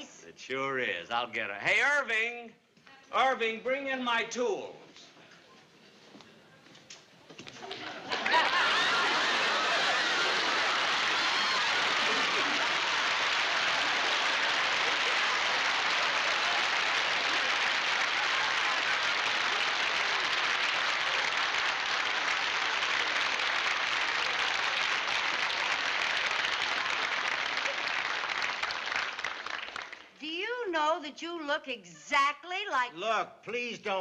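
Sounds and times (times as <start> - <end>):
audience applauding: 7.6 - 30.2.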